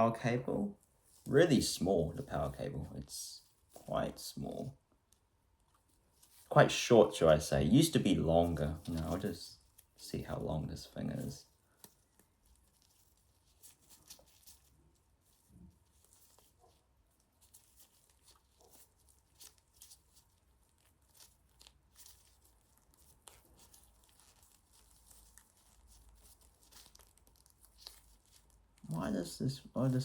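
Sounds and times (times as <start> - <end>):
cable rustling and clicking: 8.5 - 10.0, 11.1 - 28.9.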